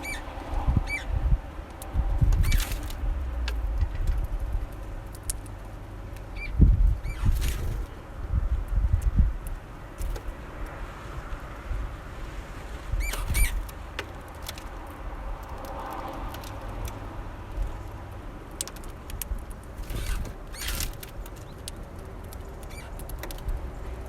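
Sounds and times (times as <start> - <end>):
finch calls: 0.0 - 1.1, 12.9 - 13.6, 22.6 - 23.0
beaks pecking at seed: 13.0 - 23.7.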